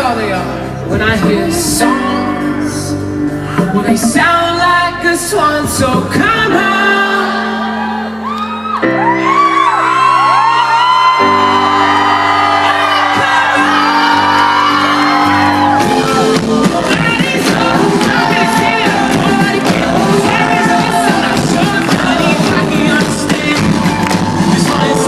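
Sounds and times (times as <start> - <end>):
keyboard chords: 0.0 - 25.0
layered voices singing: 12.7 - 25.0
drum beat: 15.6 - 25.0.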